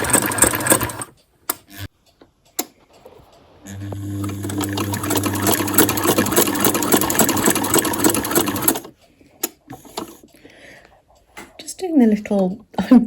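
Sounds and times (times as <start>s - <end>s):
sewing machine stitching: 0.0s - 1.1s, 3.7s - 8.9s.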